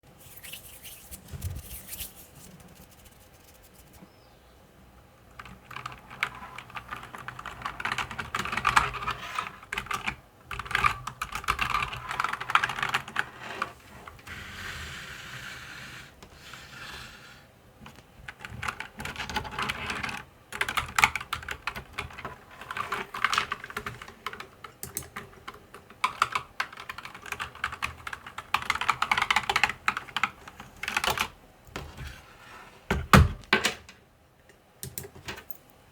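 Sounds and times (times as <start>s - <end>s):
mechanical keyboard typing: 5.4s - 13.4s, 18.3s - 31.3s.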